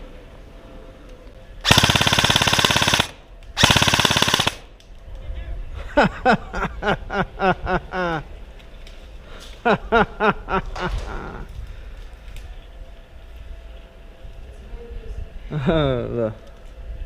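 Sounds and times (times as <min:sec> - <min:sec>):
airsoft gun full-auto bursts: 0:01.6 - 0:04.7.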